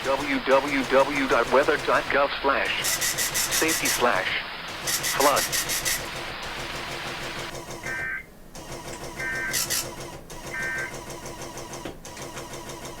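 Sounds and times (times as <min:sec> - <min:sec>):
radio background hiss: 0:00.0 - 0:08.3.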